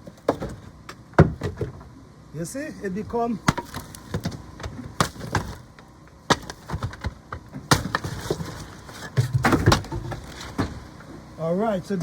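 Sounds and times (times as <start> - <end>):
wood cracking and splintering: 3.5 - 10.7.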